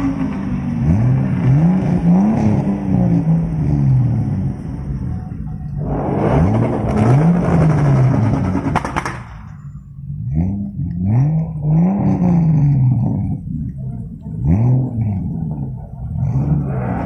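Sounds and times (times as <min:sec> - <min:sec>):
car engine revving: 0:00.0 - 0:17.0
exhaust crackling and popping: 0:05.7 - 0:17.0.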